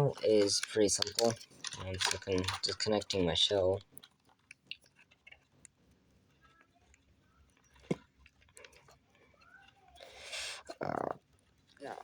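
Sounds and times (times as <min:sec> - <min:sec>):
hands clicking plastic shell: 0:00.1 - 0:03.3.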